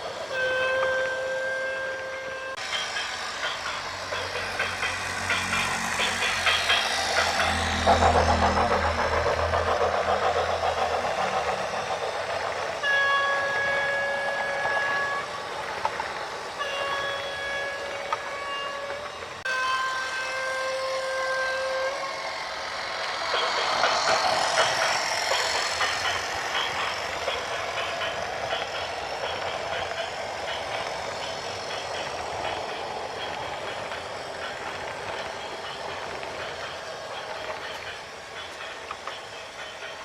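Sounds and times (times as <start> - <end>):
air horn blasts: 0.3 - 2.6, 19.5 - 22.0.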